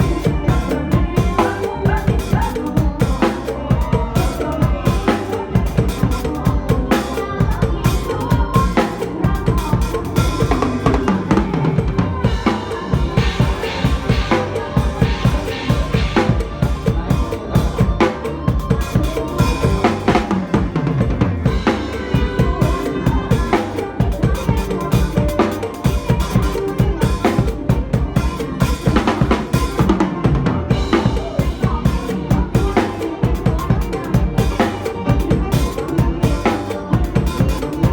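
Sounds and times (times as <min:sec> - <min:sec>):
drum kit playing: 0:00.0 - 0:37.9
upbeat song melody: 0:00.0 - 0:37.9.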